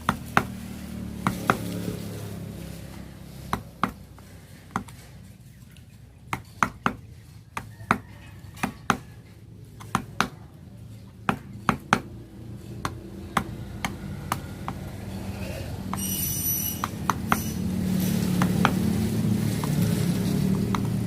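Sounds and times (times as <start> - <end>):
wooden mallet tapping chisel: 20.6 - 21.0.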